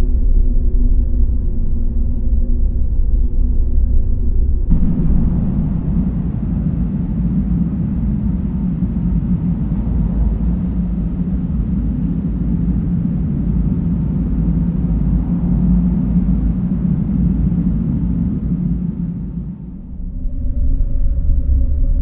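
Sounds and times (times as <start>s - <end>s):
low drone: 0.0s - 9.2s, 19.2s - 22.0s
deep wind-like rumble: 0.0s - 22.0s.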